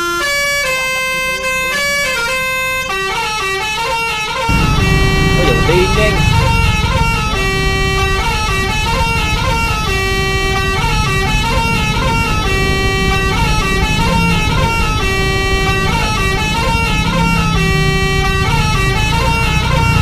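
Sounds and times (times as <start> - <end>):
bus multi-tone horn melody: 0.0 - 20.0
low rumble: 4.5 - 20.0.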